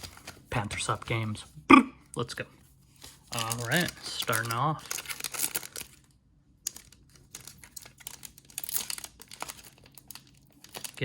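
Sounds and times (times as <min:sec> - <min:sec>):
foil wrapper crinkling and tearing: 0:03.0 - 0:11.0.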